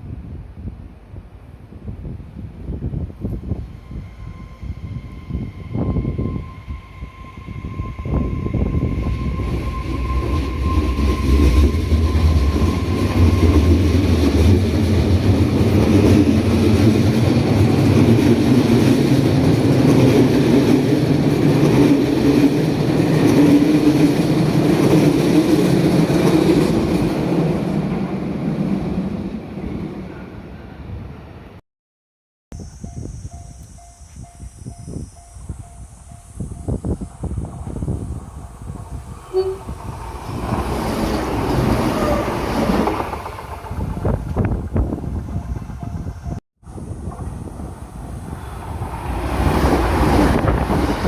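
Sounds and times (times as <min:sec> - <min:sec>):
train rumbling past: 0:02.3 - 0:31.6, 0:32.6 - 0:51.0
crossing warning tone: 0:03.5 - 0:14.6, 0:32.6 - 0:46.4.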